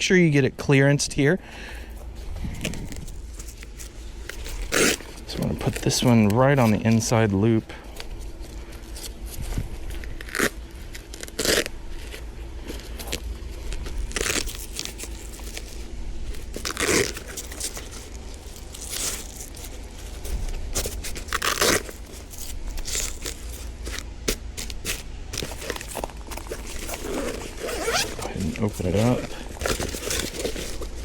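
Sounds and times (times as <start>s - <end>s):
fabric bag rustling and scraping: 1.9s - 31.0s
rasping strap rips: 2.6s - 6.8s, 10.0s - 12.2s, 12.8s - 31.0s.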